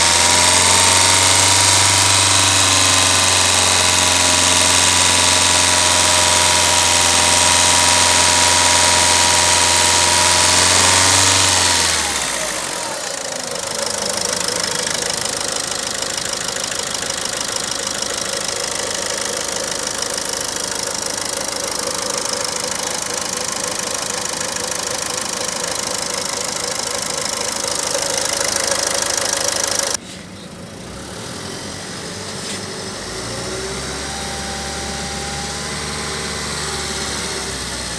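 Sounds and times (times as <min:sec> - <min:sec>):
car engine running: 0:00.0 - 0:30.0.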